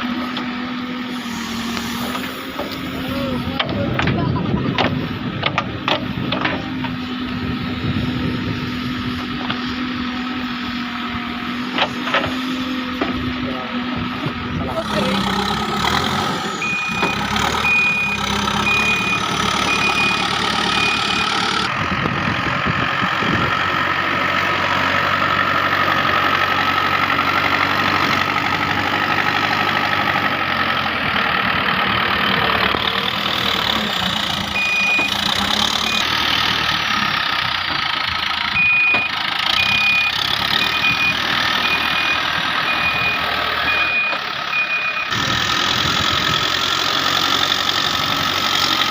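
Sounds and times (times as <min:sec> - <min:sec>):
heavy diesel engine running: 0:00.0 - 0:48.9
reversing alarm beeping: 0:16.2 - 0:21.7, 0:34.4 - 0:37.0, 0:38.5 - 0:45.4.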